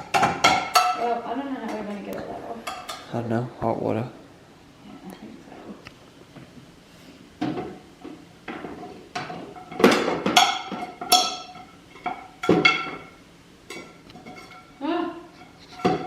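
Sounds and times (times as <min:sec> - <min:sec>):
dishes and utensils clinking: 0:00.0 - 0:02.0, 0:02.6 - 0:03.2, 0:07.4 - 0:16.0.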